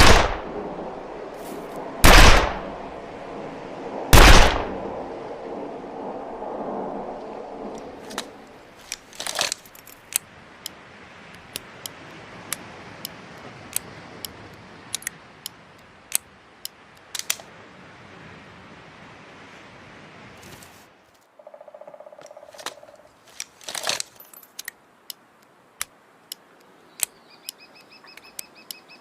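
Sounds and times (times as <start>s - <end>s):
gunshot echo: 0.0s - 0.6s, 2.0s - 2.8s, 4.1s - 4.8s.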